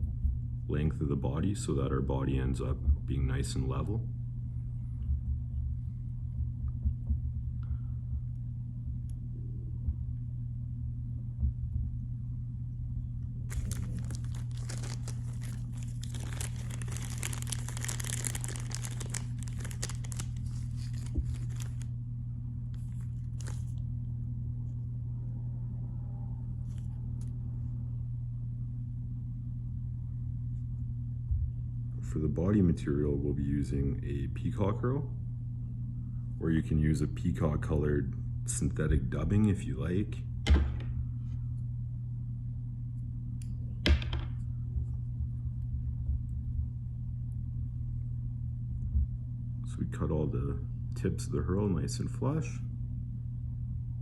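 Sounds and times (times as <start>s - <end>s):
steady low hum: 0.0s - 54.0s
crinkling rustling handling noise: 13.5s - 21.9s, 22.7s - 23.8s.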